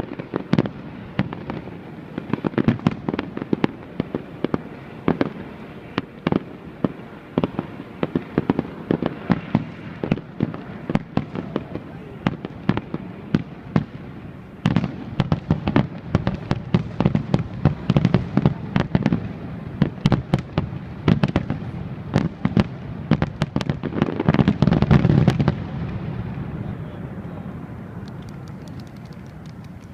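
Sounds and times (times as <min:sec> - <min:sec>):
continuous rumble: 0:00.0 - 0:29.9
firework shells bursting: 0:28.0 - 0:29.9.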